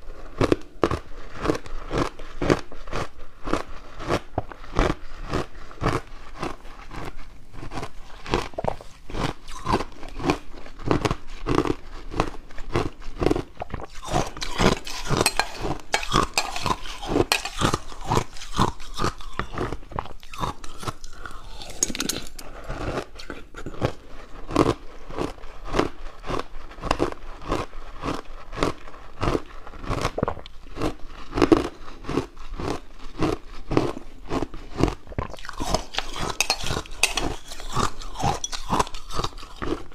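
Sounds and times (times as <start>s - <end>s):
ice being crunched: 13.8s - 19.6s, 35.3s - 39.8s.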